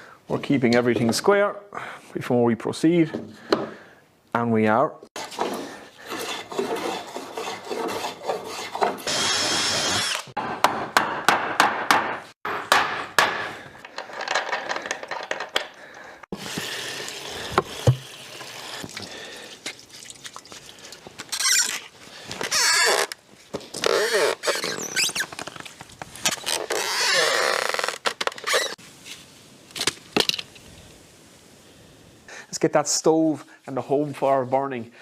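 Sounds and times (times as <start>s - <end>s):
wood rubbing and scraping: 5.2s - 10.2s.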